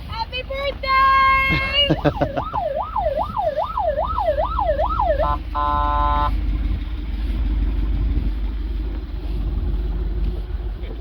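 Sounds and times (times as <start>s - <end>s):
low vehicle rumble: 0.0s - 11.0s
wailing siren: 1.4s - 6.4s
horn blast: 5.1s - 6.4s.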